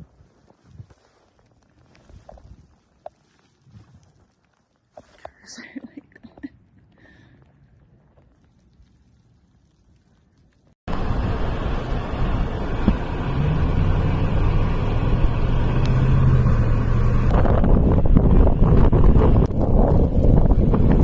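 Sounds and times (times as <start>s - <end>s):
low hum: 10.9s - 21.0s
wind buffeting microphone: 14.3s - 21.0s.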